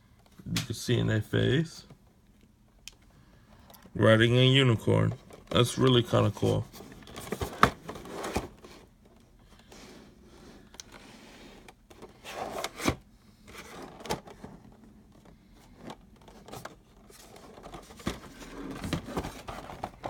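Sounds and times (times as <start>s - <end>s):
packaging rustling: 5.2s - 9.7s, 11.7s - 20.0s.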